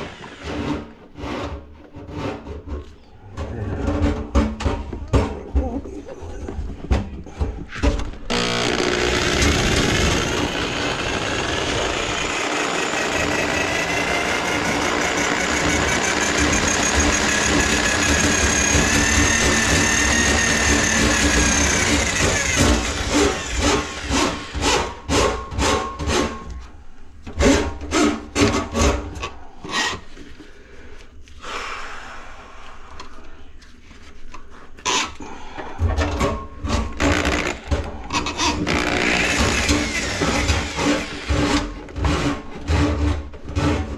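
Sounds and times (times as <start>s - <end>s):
drain-cleaning machine motor whining: 8.3s - 24.1s.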